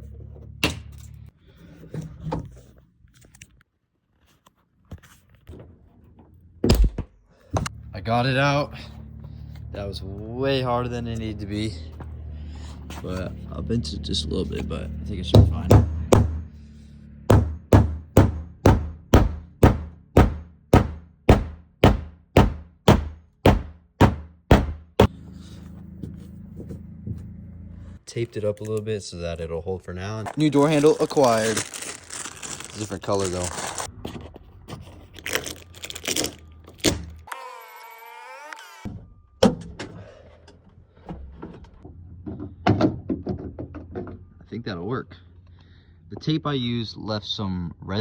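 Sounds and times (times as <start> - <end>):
low hum: 7.7 - 20.9, 25.0 - 28.0
sharp knocks: 15.4 - 16.5, 17.3 - 25.1.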